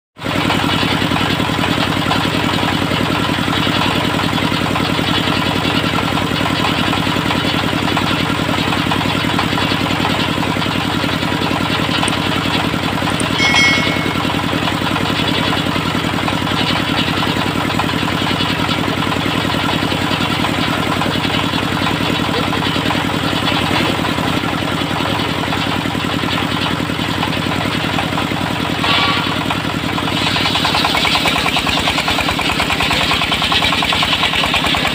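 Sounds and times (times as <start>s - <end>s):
sawmill engine running: 0.3s - 15.2s, 16.0s - 34.9s
brief high chirp: 13.3s - 14.7s.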